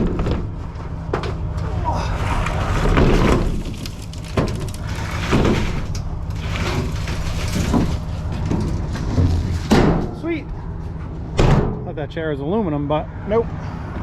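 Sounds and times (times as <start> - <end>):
knocks and scrapes: 0.0 - 1.4, 2.0 - 10.2.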